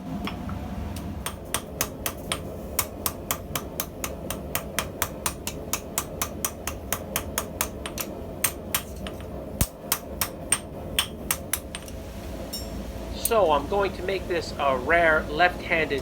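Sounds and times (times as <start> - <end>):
hammer striking steel on anvil: 1.2 - 13.4.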